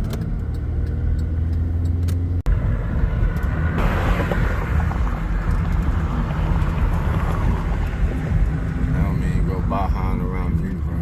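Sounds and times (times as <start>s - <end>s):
road and tyre noise: 0.0s - 11.0s
rushing noise: 2.5s - 9.2s.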